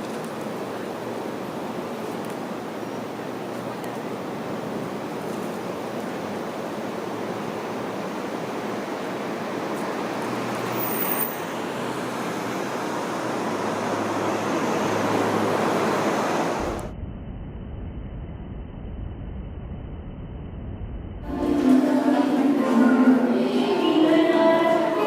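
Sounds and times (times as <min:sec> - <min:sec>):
steady rushing noise: 0:11.4 - 0:25.0.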